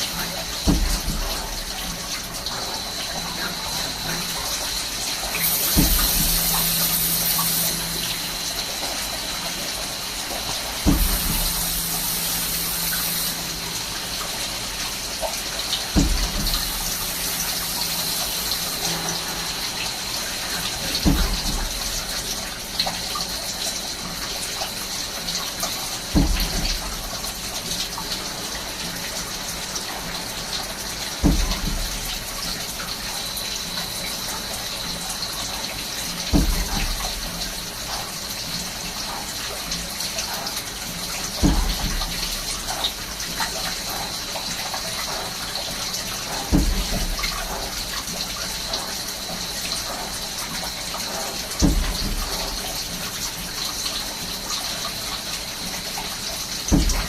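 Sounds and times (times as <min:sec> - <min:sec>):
coolant oil spraying hiss: 0:00.0 - 0:23.6
high machine whine: 0:16.4 - 0:21.0.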